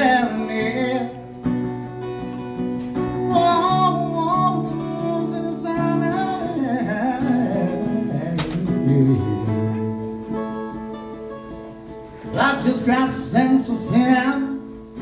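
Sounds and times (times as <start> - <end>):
person singing country song: 0.0 - 11.0, 12.2 - 15.0
acoustic guitar: 0.0 - 15.0
sharp click: 8.4 - 8.8.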